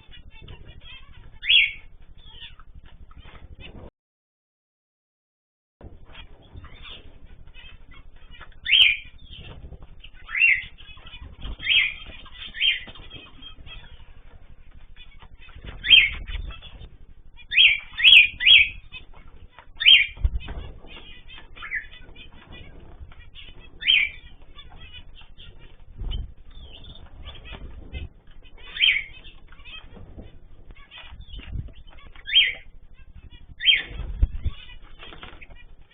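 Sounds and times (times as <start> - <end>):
birds chirping: 0.0 - 3.9, 5.8 - 35.9
wings flapping: 0.0 - 3.9, 5.8 - 35.9.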